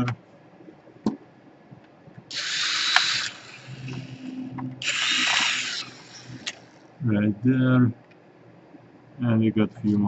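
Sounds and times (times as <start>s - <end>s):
electric screwdriver running: 2.3s - 6.7s.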